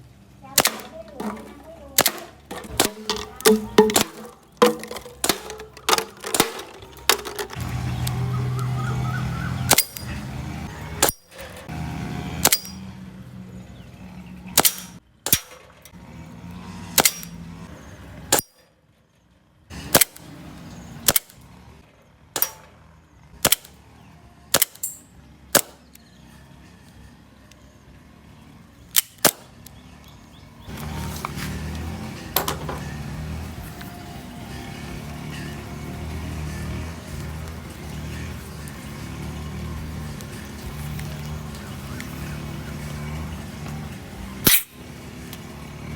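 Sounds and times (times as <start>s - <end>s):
airsoft pistol shots cracking: 0.6s - 1.0s, 2.0s - 4.2s, 14.6s - 15.6s, 25.6s - 25.8s.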